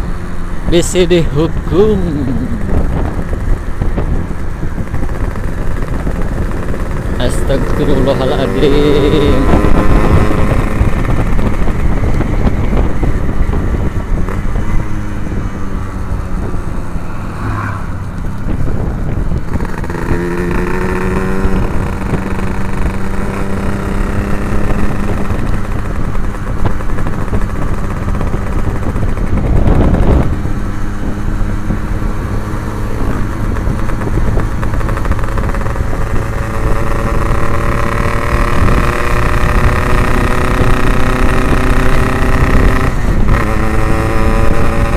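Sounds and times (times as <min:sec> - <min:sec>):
low wind rumble: 0:00.0 - 0:44.9
two-stroke motorcycle engine revving: 0:00.0 - 0:44.9.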